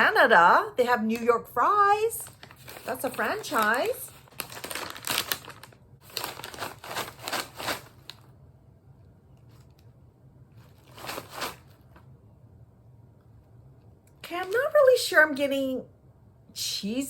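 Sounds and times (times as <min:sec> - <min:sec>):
plastic snack bag crinkling: 0:02.1 - 0:08.3, 0:10.6 - 0:12.0.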